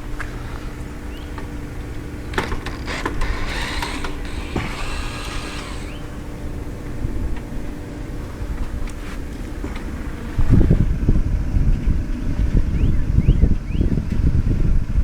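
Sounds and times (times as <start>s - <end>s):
bolt creaking squeak: 2.3s - 6.1s.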